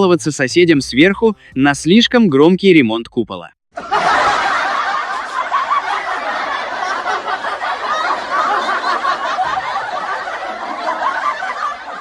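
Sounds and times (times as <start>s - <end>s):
group of people laughing: 3.8s - 12.0s.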